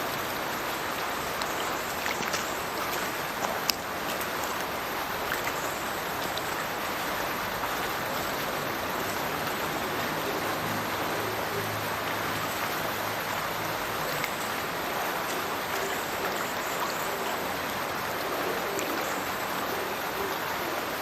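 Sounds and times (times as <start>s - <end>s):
sharp water splashes: 0.0s - 9.9s, 12.1s - 18.0s
water falling into a river: 0.0s - 21.0s.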